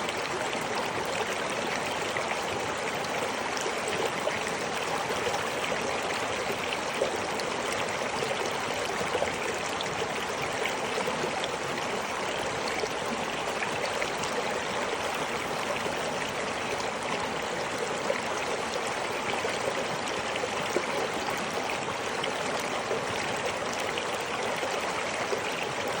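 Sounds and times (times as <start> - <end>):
river water rushing: 0.0 - 26.0.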